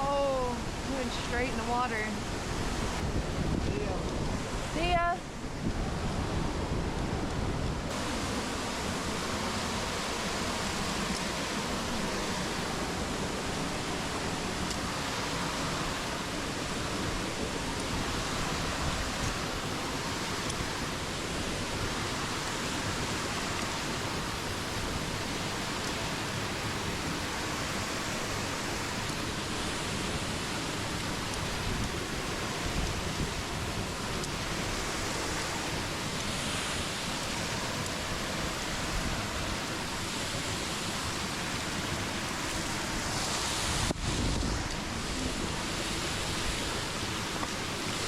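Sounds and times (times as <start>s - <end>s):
waterfall rushing: 0.0s - 48.0s.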